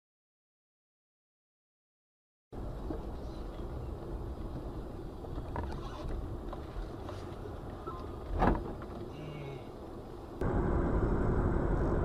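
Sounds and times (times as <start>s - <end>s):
car driving rumble: 2.6s - 12.0s.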